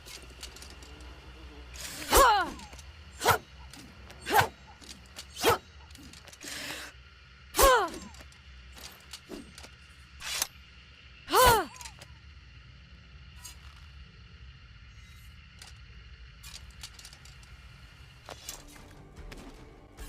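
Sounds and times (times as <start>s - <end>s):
metallic sword ring: 1.8s - 6.3s
sword swish: 3.2s - 3.4s, 4.2s - 4.5s, 5.3s - 5.6s.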